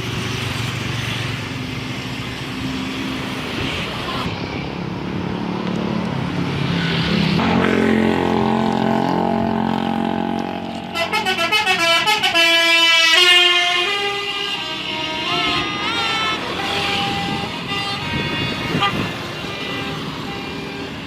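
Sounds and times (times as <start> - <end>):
bus multi-tone horn tune: 7.4 - 21.0.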